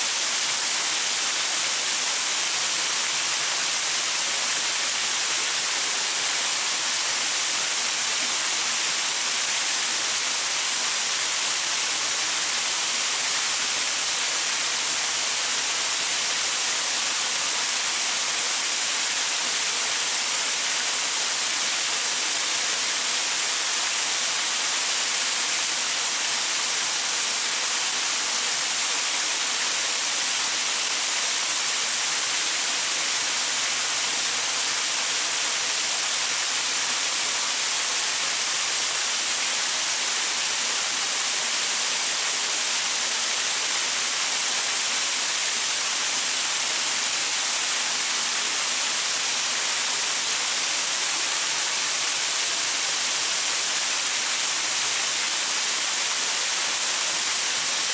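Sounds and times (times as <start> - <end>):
waterfall splashing over rocks: 0.0 - 57.9.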